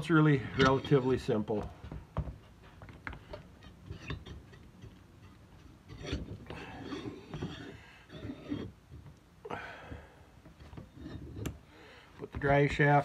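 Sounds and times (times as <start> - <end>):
metal parts clicking and scraping: 0.0 - 1.5, 2.9 - 8.8.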